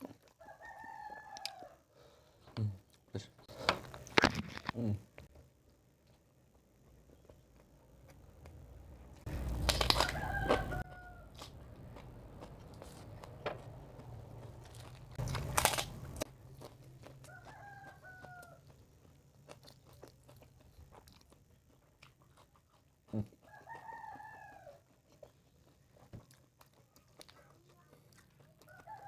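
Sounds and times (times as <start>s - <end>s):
crunchy chewing: 0.0s - 1.8s, 3.8s - 29.0s
rooster crowing: 0.4s - 1.9s, 9.9s - 11.4s, 17.2s - 18.7s, 23.5s - 24.8s, 28.7s - 29.0s.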